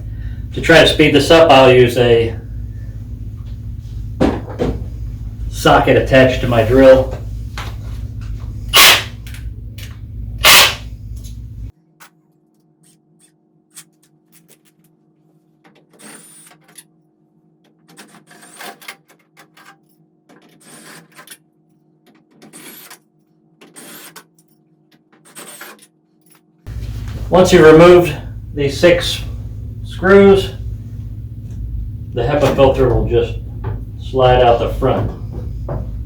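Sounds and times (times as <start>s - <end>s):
steady low hum: 0.0s - 11.7s, 26.7s - 36.0s.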